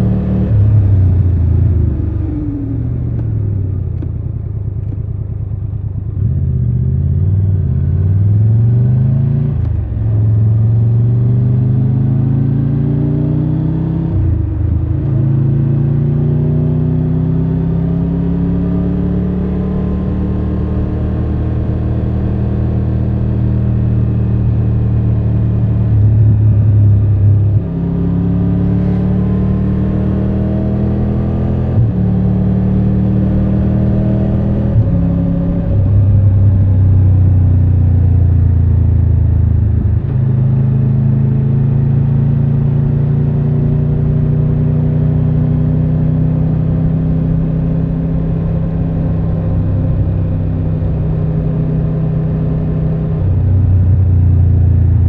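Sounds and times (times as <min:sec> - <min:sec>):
motorcycle engine running: 0:00.6 - 0:08.4.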